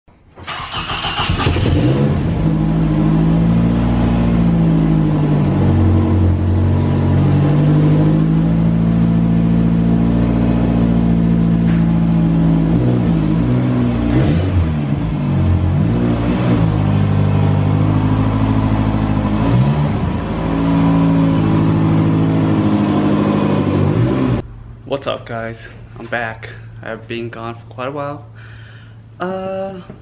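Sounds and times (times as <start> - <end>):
car engine revving: 0.4 - 24.8.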